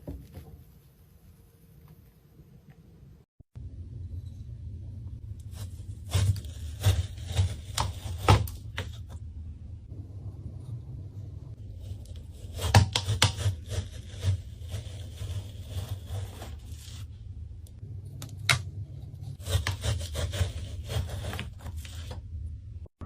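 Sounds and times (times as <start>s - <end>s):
low steady hum: 0.2s - 23.0s
rough rubbing and scraping: 5.4s - 9.1s, 10.4s - 17.2s, 19.0s - 22.2s.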